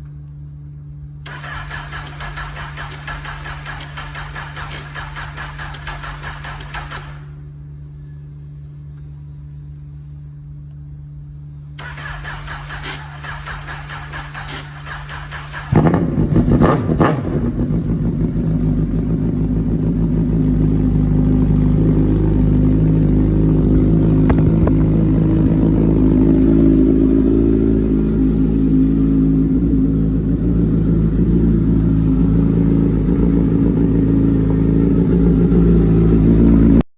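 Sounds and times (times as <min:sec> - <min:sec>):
motorcycle engine starting and running: 0:00.0 - 0:10.0, 0:10.7 - 0:36.9.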